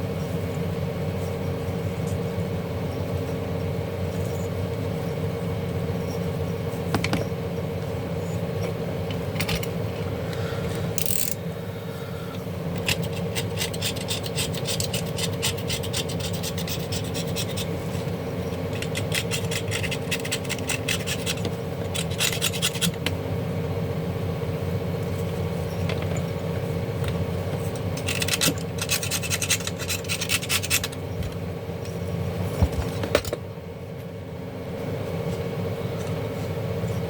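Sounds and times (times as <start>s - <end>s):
steady background hum: 0.0s - 37.0s
scratching and scraping on plastic parts: 12.8s - 23.0s, 27.5s - 31.4s.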